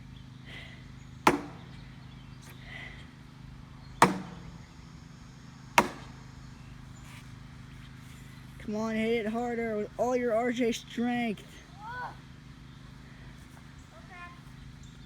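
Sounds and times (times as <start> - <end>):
steady low hum: 0.0 - 15.0
heavy blows on metal casing: 1.3 - 1.9, 4.0 - 4.8, 5.8 - 6.2.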